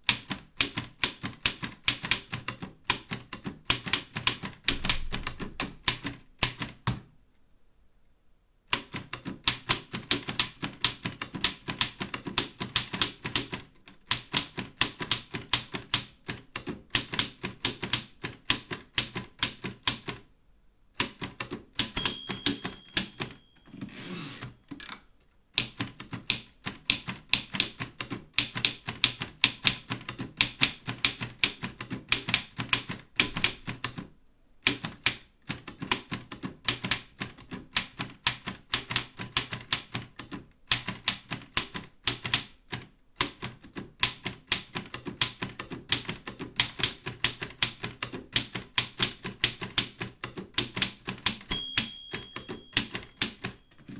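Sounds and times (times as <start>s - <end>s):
typewriter key strikes: 21.1s - 23.9s, 44.0s - 53.9s
typewriter margin bell: 21.9s - 24.4s, 51.4s - 53.9s.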